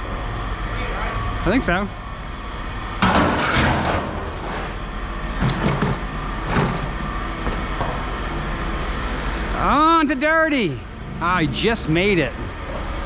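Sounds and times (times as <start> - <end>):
steady low rumble: 0.0 - 13.0
metal crashes: 2.2 - 7.0
scrap metal clattering: 2.2 - 7.0.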